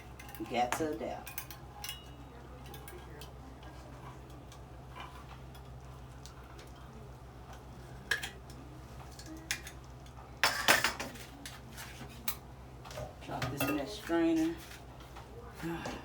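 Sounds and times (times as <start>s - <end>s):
metal kitchenware clattering: 0.0s - 5.8s, 10.4s - 11.3s, 13.3s - 14.6s
metal kitchenware clinking: 0.0s - 5.8s, 7.9s - 8.4s, 10.4s - 11.2s, 13.3s - 14.5s
low steady hum: 0.0s - 16.0s.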